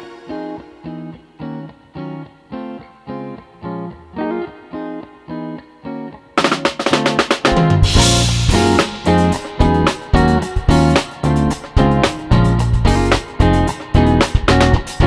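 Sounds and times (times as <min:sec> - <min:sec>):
drum kit: 0:06.4 - 0:15.0.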